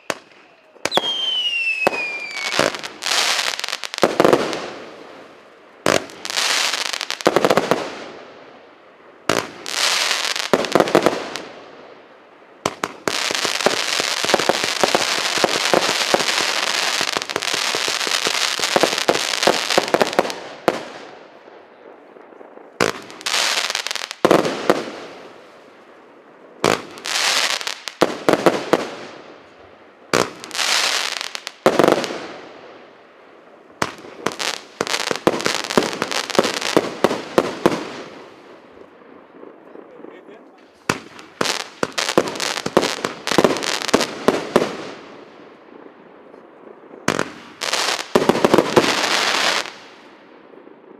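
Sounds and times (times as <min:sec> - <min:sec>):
firework shots: 0:00.0 - 0:05.2, 0:05.8 - 0:08.4, 0:33.8 - 0:45.9, 0:46.6 - 0:50.7
firework crackling: 0:00.0 - 0:21.8, 0:22.4 - 0:45.9, 0:46.9 - 0:50.9.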